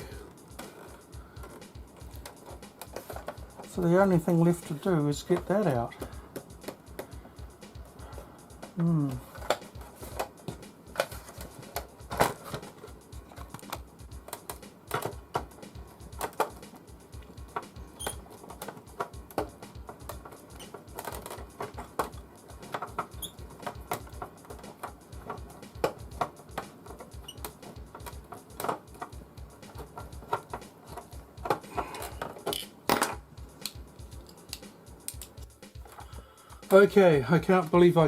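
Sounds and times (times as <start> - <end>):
background music with low beat: 0.0 - 38.0
hand tools clicking and scraping: 0.5 - 7.1, 17.4 - 36.8.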